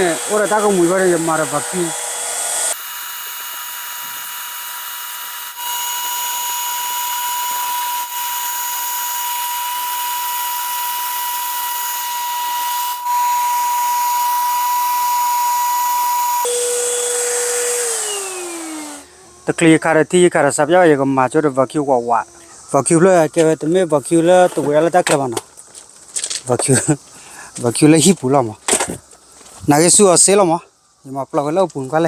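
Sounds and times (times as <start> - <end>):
power tool motor whining: 0.0 - 19.8.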